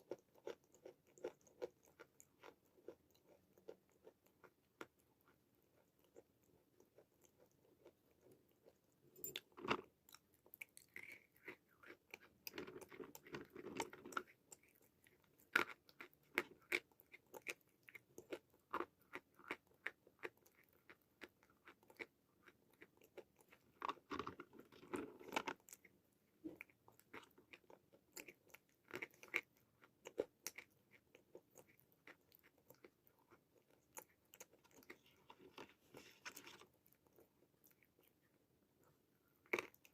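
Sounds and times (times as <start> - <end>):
chalk crunching while chewing: 9.4 - 38.3.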